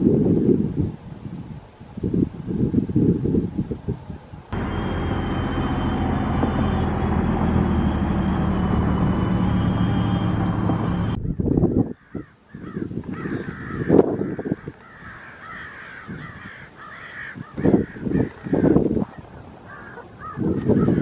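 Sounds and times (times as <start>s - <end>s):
vehicle rumble: 4.5s - 11.3s
crows cawing: 11.8s - 18.8s, 19.7s - 21.0s.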